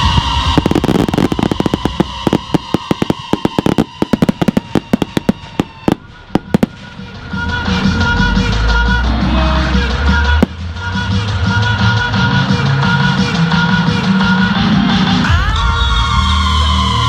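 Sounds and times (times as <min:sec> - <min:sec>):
fireworks exploding: 0:00.0 - 0:07.1, 0:10.4 - 0:10.8.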